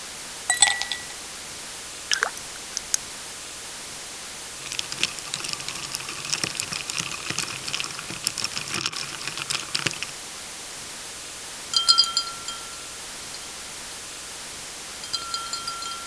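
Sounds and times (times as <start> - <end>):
tableware clinking: 0.5 - 1.2, 11.7 - 13.5, 15.0 - 16.0.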